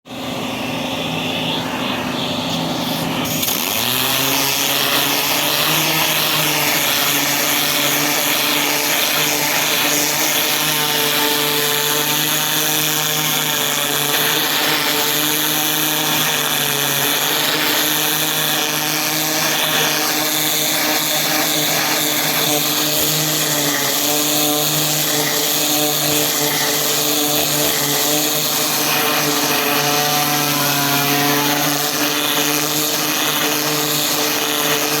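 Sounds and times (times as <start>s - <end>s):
motor running: 0.1s - 35.0s
rushing hiss of air: 0.2s - 3.6s.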